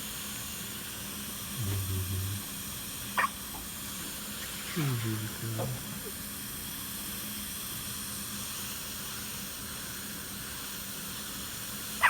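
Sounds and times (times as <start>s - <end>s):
faint low hum: 1.6s - 3.4s, 4.0s - 6.2s
steady hiss: 3.9s - 6.6s.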